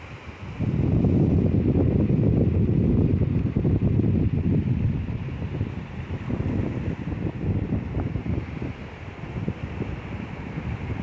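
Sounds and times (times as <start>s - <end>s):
sea surf hiss: 0.0s - 2.2s
wind buffeting microphone: 0.0s - 11.0s.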